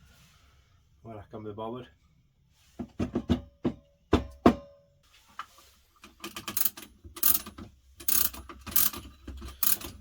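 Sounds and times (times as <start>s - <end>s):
clattering and ratchet clicks: 6.0s - 10.0s.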